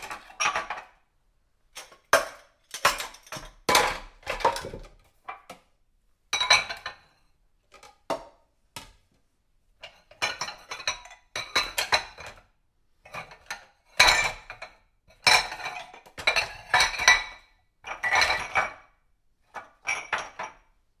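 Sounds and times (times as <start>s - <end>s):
dishes clinking and clattering: 0.0s - 1.0s, 1.8s - 5.5s, 6.4s - 7.1s, 10.0s - 12.4s, 13.1s - 18.9s, 19.5s - 20.7s.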